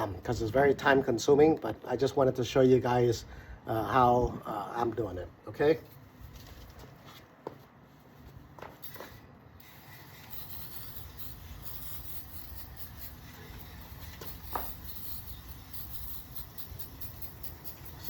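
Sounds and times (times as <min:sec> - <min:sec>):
aerosol can spraying hiss: 0:09.6 - 0:18.0.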